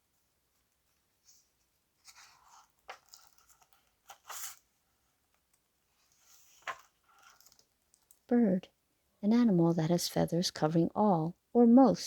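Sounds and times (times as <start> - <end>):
paper rustling as page turns: 1.2 - 4.7, 6.0 - 7.7.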